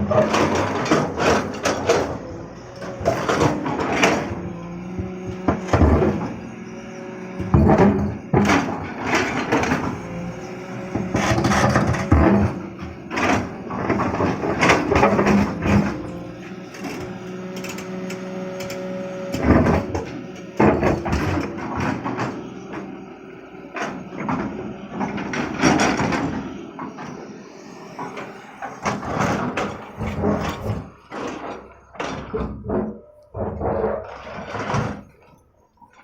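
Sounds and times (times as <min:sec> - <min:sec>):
excavator engine running: 0:00.0 - 0:36.0
bucket scraping stony soil: 0:23.8 - 0:35.4.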